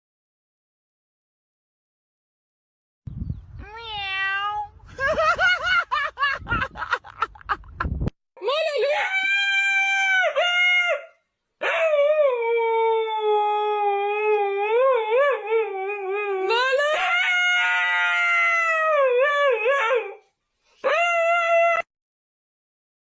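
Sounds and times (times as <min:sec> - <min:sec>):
dog howling: 0:08.8 - 0:20.2.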